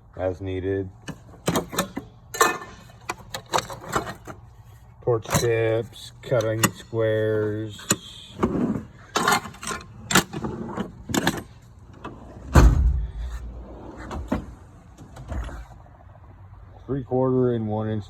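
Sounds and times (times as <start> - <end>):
metal drawers clacking and rattling: 1.0 - 4.4, 5.2 - 7.0, 7.7 - 15.8
drawer shutting with heavy thud: 12.4 - 15.7.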